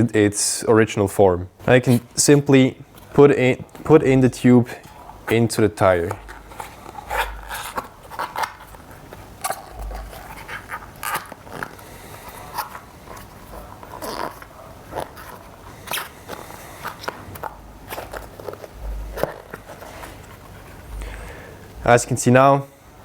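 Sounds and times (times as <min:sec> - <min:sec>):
rubber squeaking on rubber: 0:03.1 - 0:21.1.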